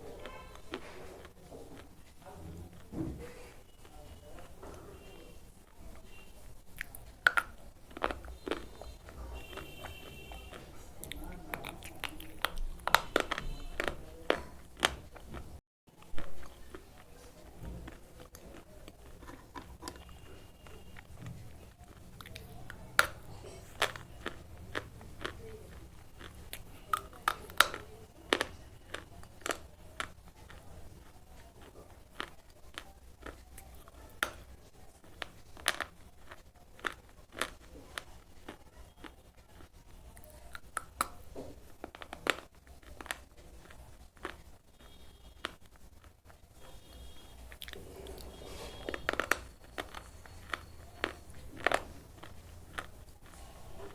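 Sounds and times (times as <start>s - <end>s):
soft chewing: 0.0s - 53.9s
slate pencil crunching: 17.1s - 21.9s.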